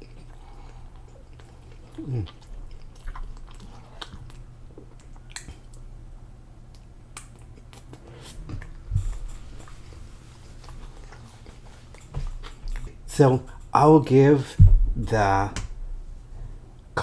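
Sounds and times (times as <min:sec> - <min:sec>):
person chewing food: 0:00.0 - 0:13.7
dull thump: 0:14.6 - 0:15.8.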